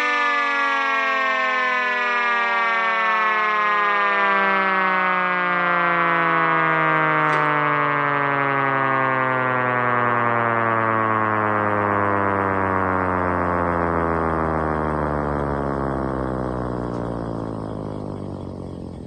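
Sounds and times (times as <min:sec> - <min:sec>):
electronic siren tone sliding down: 0:00.0 - 0:19.0
low drone: 0:06.6 - 0:19.0.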